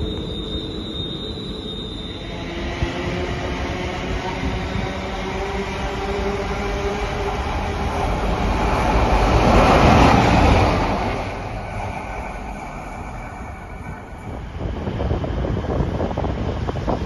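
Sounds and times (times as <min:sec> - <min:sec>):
train passing: 0:00.0 - 0:17.0.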